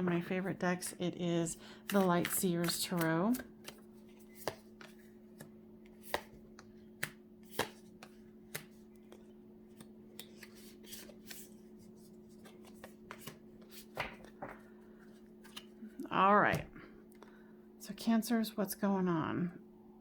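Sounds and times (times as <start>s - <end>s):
faint steady hum: 0.0s - 20.0s
cards being shuffled: 1.8s - 15.9s.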